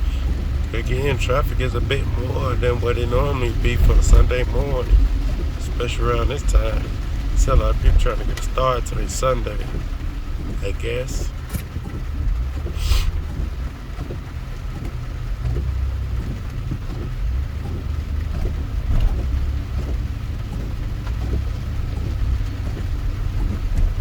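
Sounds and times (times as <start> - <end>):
car cabin rumble at highway speed: 0.0 - 24.0
tyres on wet road: 0.0 - 24.0.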